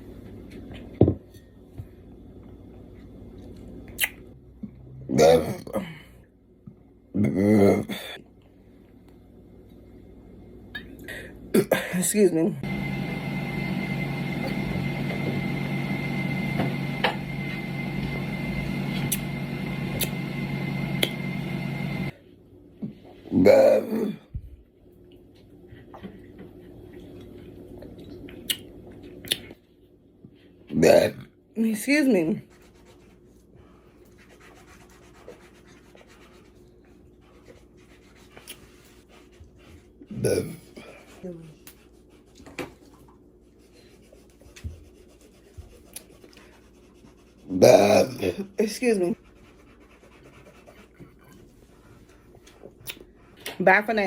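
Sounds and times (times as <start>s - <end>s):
machine hum with high whine: 12.6s - 22.6s.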